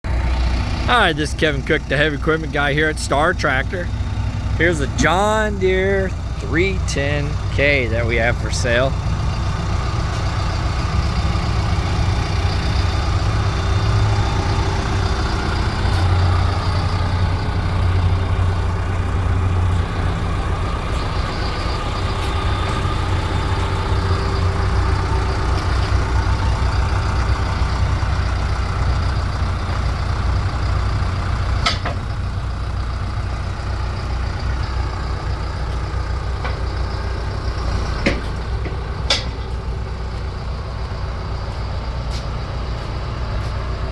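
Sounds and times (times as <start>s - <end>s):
backhoe diesel engine running: 0.0s - 43.9s
sharp metallic clanks: 37.9s - 39.6s.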